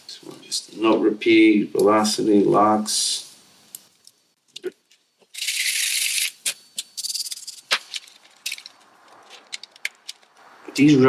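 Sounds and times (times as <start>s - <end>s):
plastic parts rattling: 5.3s - 10.4s
sharp plastic clicks: 7.6s - 10.4s.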